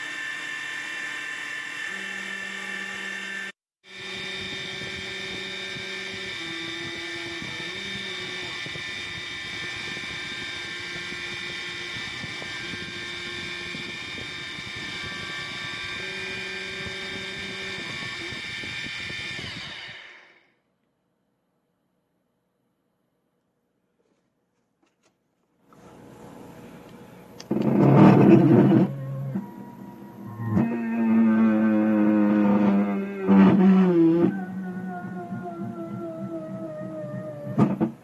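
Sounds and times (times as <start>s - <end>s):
router spindle high whine: 0.0s - 20.4s, 25.8s - 38.0s
motor tones shifting in pitch: 1.4s - 19.4s, 25.9s - 38.0s.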